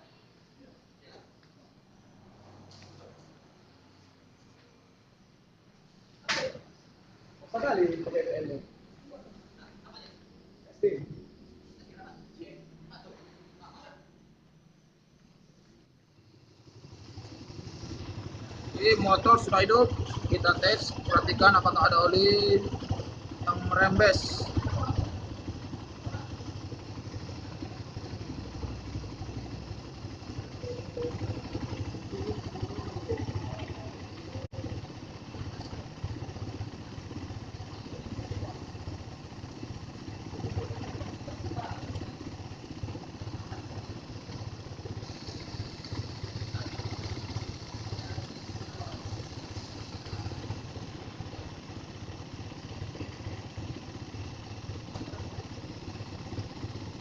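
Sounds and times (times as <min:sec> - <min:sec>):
motorcycle engine idling: 0:15.1 - 0:57.0.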